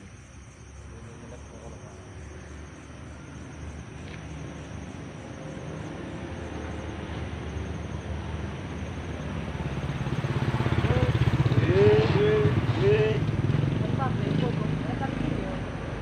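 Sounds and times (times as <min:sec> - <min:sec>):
motorcycle engine running: 0:09.0 - 0:15.7.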